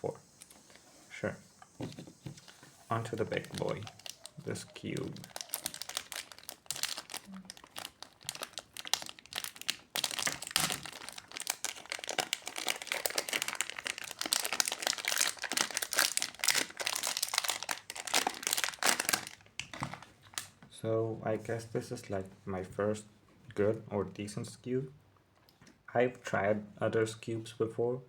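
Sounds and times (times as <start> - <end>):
plastic packaging crinkling: 1.8 - 20.6.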